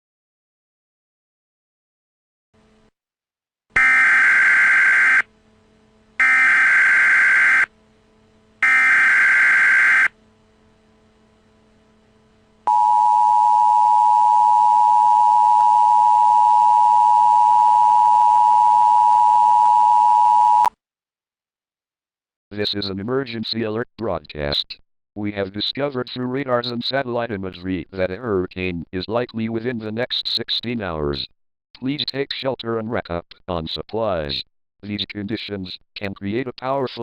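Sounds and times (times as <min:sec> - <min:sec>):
two-tone attention signal: 0:08.6 - 0:10.1.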